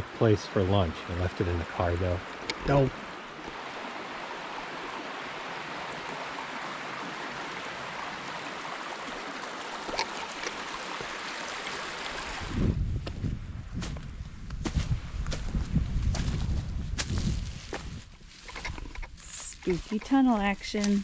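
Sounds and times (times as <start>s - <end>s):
creek flowing through culvert: 0.0s - 12.6s.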